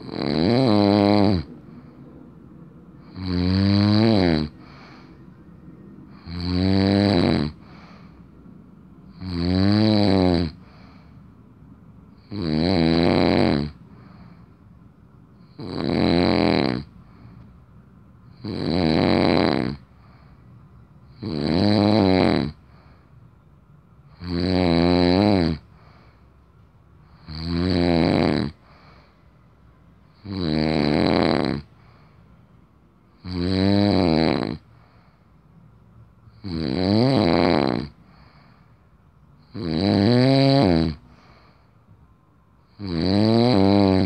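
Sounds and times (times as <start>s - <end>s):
man snoring: 0.0s - 1.5s, 3.0s - 5.1s, 6.1s - 7.9s, 9.1s - 10.9s, 12.2s - 13.8s, 15.4s - 17.0s, 18.3s - 19.9s, 21.1s - 22.7s, 24.1s - 25.8s, 27.2s - 28.9s, 30.1s - 31.8s, 33.2s - 34.7s, 36.3s - 38.4s, 39.4s - 41.0s, 42.7s - 44.0s
quiet breathing: 1.0s - 3.2s, 3.8s - 6.4s, 7.3s - 9.2s, 10.4s - 12.3s, 13.7s - 15.6s, 16.8s - 18.5s, 19.8s - 21.2s, 22.5s - 24.2s, 25.6s - 27.4s, 28.4s - 30.3s, 31.6s - 33.2s, 34.6s - 36.4s, 37.9s - 39.6s, 40.6s - 42.8s.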